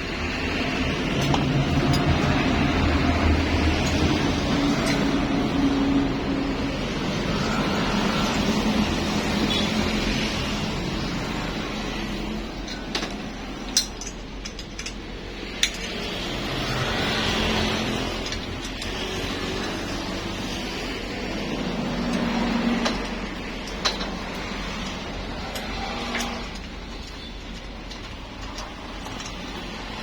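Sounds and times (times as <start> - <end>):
metal tools clinking: 0.2 - 30.0.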